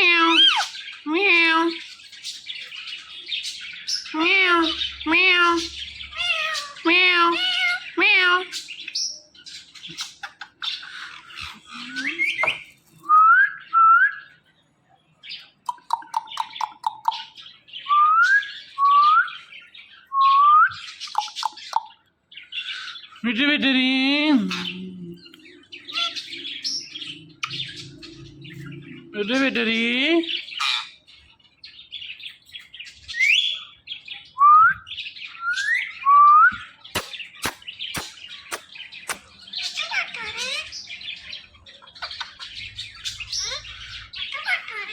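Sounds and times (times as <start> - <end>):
parrot chattering: 0.0 - 1.8, 4.1 - 8.6, 9.9 - 12.7, 22.7 - 26.4, 30.6 - 31.0, 37.0 - 40.9, 43.1 - 44.9
parrot short chirps: 37.0 - 39.2
sharp clicks: 37.0 - 39.3.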